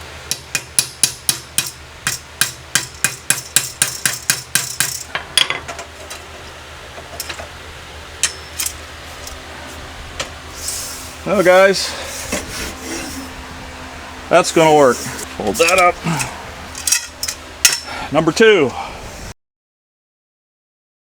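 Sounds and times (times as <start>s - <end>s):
hammer striking metal: 0.3s - 5.6s, 8.2s - 8.8s, 16.8s - 17.9s.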